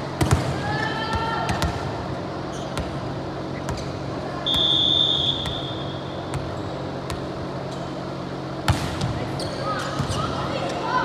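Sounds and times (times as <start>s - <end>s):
referee's whistle: 4.5s - 6.0s
volleyball being hit: 8.6s - 9.2s.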